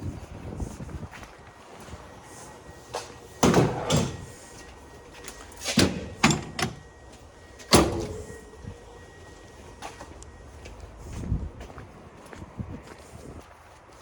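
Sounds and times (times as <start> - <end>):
battery cells clunking down: 5.2 - 8.6.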